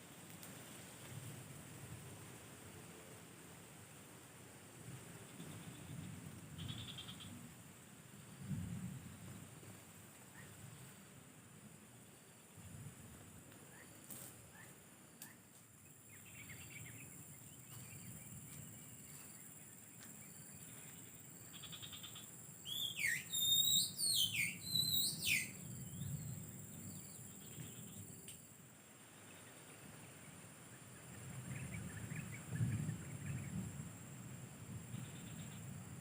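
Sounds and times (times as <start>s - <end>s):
high insect drone: 5.1s - 8.5s, 10.6s - 36.0s
bird singing whistled notes: 16.1s - 18.2s, 21.5s - 28.0s.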